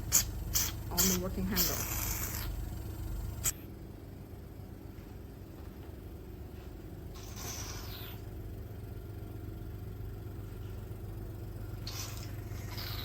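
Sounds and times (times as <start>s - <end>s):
short hissing bursts: 0.0s - 2.6s
machine humming: 0.0s - 13.0s.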